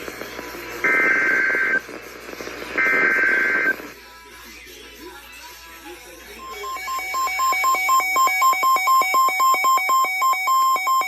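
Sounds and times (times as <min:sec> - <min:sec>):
rapid pulsing electronic beeps: 0:06.4 - 0:11.0.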